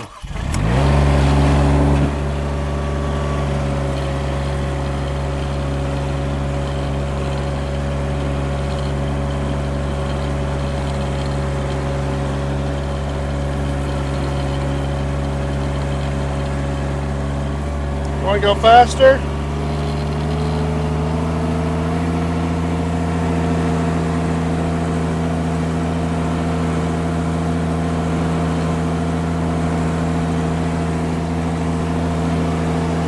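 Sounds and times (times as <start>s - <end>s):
skid steer engine idling: 0.2s - 33.0s.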